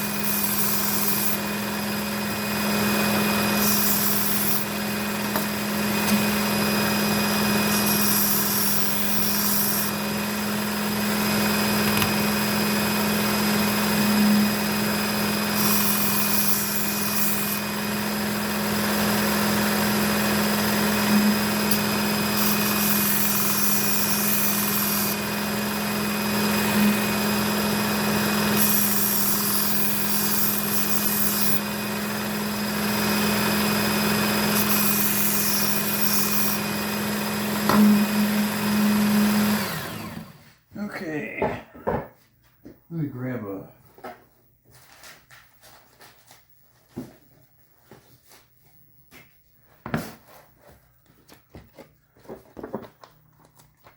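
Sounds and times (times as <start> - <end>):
belt sharpener motor running: 0.0 - 40.4.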